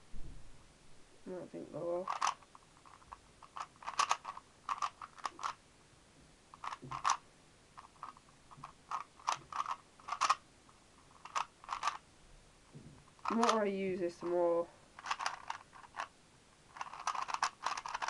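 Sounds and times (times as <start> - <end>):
speed cube clicking: 2.0 - 5.6, 6.6 - 7.2, 7.8 - 10.4, 11.0 - 12.0, 13.1 - 14.4, 15.0 - 16.1, 16.7 - 18.0.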